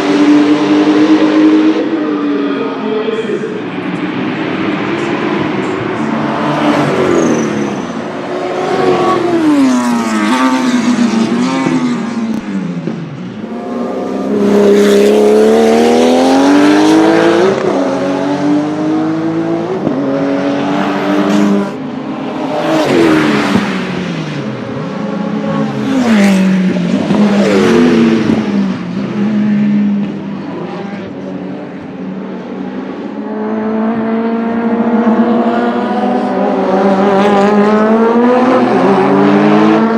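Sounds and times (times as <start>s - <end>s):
race car engine revving: 3.5s - 39.9s.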